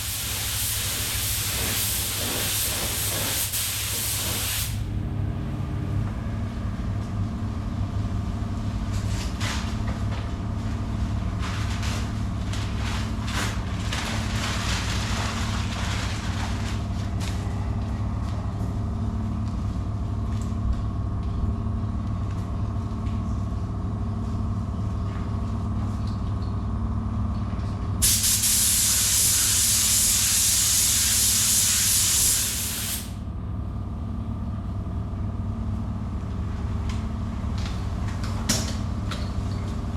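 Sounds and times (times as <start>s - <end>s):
spray gun hissing: 0.0s - 4.8s, 28.0s - 33.1s
low machine hum: 0.0s - 28.7s, 33.0s - 39.9s.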